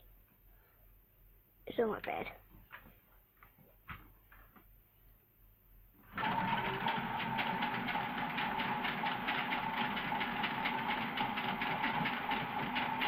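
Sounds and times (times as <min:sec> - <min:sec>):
drum rattling and knocking: 0:06.2 - 0:13.0.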